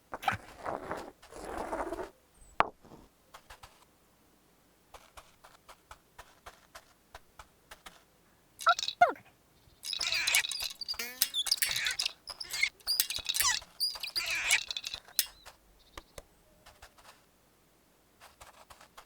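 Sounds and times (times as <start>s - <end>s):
squeaky cartoon sound effects: 8.6s - 9.2s, 9.9s - 15.4s
soft clicks: 9.8s - 16.3s.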